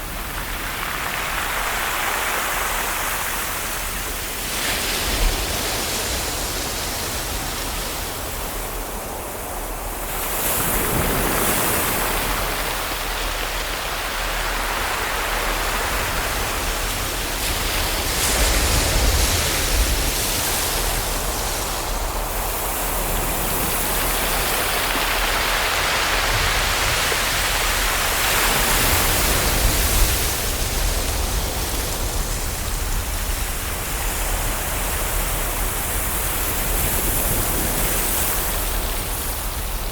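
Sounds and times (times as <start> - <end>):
ocean waves washing onto shore: 0.0 - 39.9.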